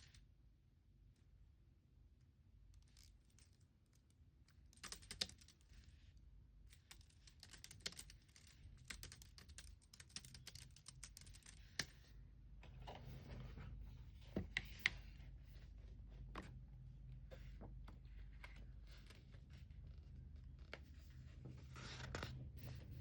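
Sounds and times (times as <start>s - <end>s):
computer keyboard typing: 7.3s - 11.9s.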